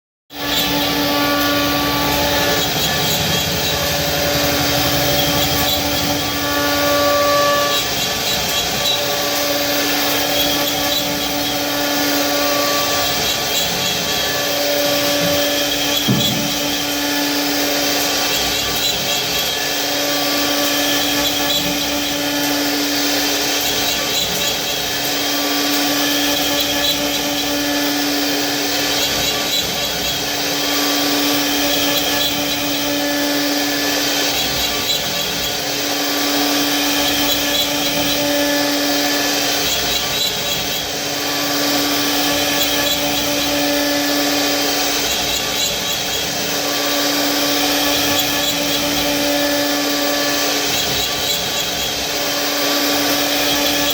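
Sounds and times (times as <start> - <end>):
router spindle whine cutting wood: 0.3 - 53.9
thump: 16.0 - 16.6.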